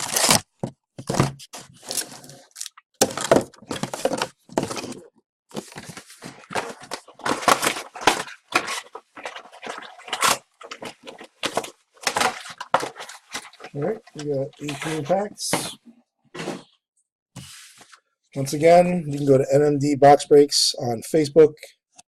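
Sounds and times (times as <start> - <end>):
wrapper tearing and crinkling: 0.0 - 0.5, 6.3 - 15.0.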